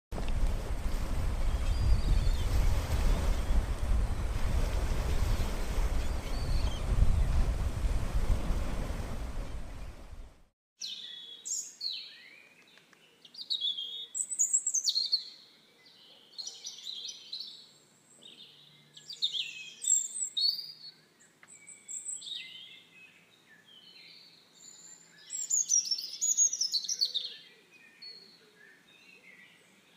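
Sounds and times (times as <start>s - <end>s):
songbirds chirping: 5.2s - 7.4s, 10.8s - 29.9s.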